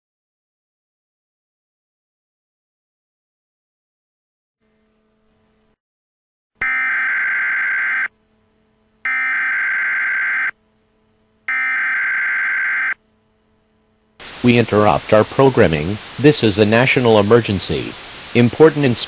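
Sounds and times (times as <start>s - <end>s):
electronic data bursts: 6.6s - 8.1s, 9.1s - 10.5s, 11.5s - 13.0s.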